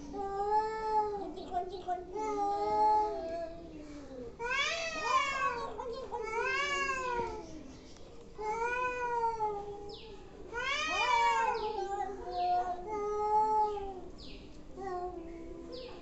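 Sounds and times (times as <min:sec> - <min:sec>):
cats yowling: 0:04.4 - 0:07.5, 0:08.4 - 0:09.9, 0:10.5 - 0:14.1.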